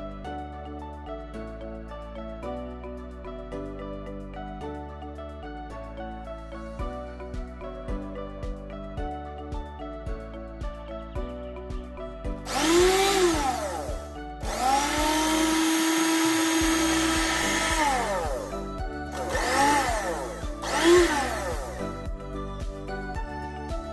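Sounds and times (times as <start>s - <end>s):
background music: 0.0s - 23.9s
blender motor whining: 12.5s - 22.0s.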